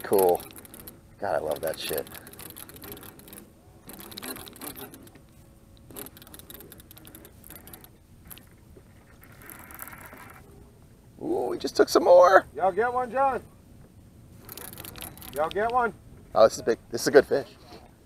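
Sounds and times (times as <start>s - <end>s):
fishing reel drag clicking: 0.0s - 5.2s, 5.8s - 10.4s, 14.4s - 15.8s.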